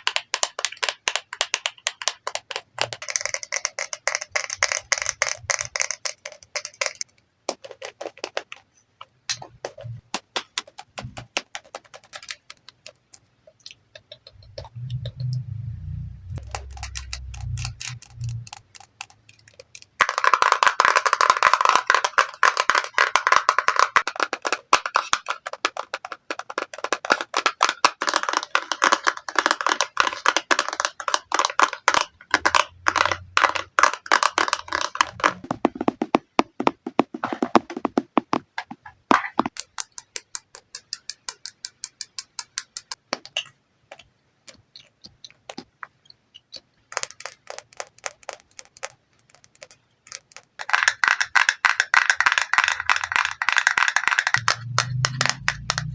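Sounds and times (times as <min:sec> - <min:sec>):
low rumble: 0:14.8 - 0:17.4, 0:54.4 - 0:55.9
tapping on make-up products: 0:16.4 - 0:43.5, 0:49.5 - 0:55.9.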